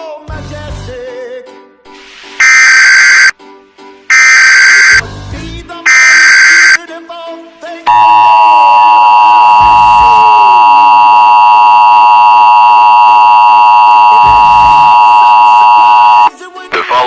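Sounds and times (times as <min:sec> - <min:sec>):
two-tone electronic alert tone: 0:02.4 - 0:03.3, 0:04.1 - 0:05.0, 0:05.9 - 0:06.8, 0:07.9 - 0:16.3.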